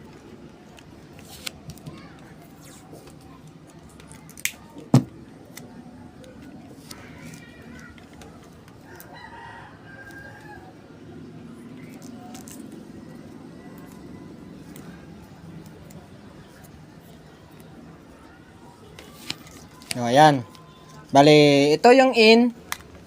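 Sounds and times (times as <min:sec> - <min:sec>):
rooster crowing: 0:08.8 - 0:10.8.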